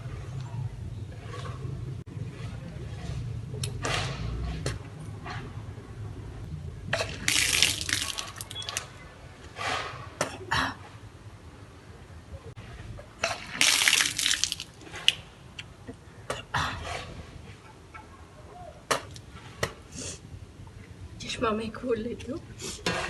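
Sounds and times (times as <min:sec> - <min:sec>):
water splashing down: 0:07.0 - 0:08.9, 0:13.3 - 0:15.2.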